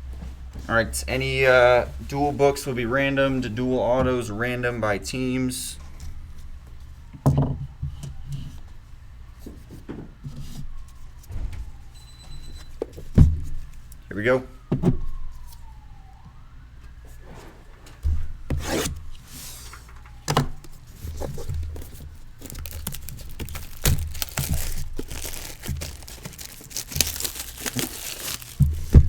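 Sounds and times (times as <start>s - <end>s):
crinkling handling noise: 16.8s - 29.0s
shrink wrap tearing: 20.7s - 29.0s.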